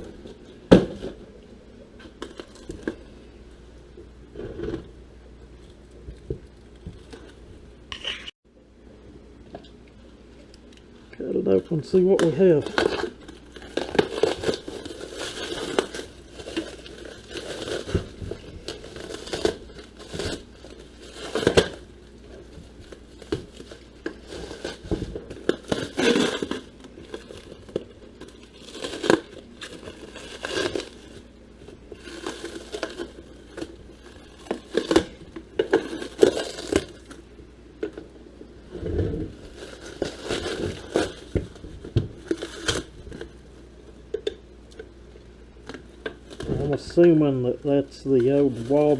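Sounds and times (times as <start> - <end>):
cardboard tearing and crinkling: 11.8 - 37.2, 39.2 - 43.3, 48.2 - 48.9.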